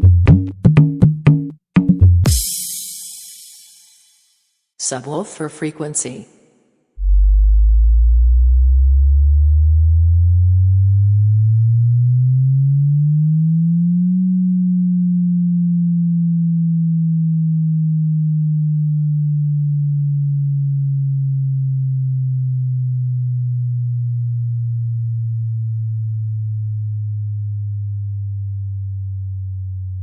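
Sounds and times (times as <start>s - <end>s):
deep sine tone sweeping in pitch: 7.0s - 30.0s.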